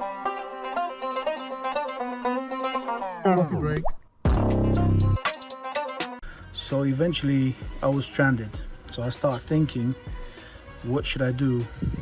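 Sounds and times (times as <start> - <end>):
picked banjo melody: 0.0 - 3.5, 4.4 - 6.2
steady low note: 4.3 - 5.2.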